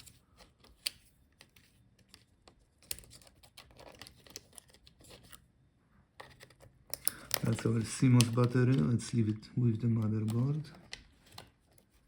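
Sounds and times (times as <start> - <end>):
small connectors clicking: 6.9 - 8.9.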